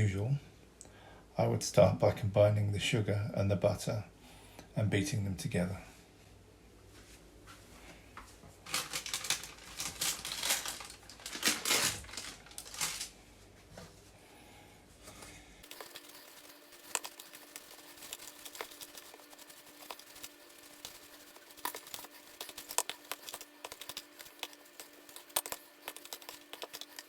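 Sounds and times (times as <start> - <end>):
utensil scraping a mixing bowl: 15.6 - 27.0.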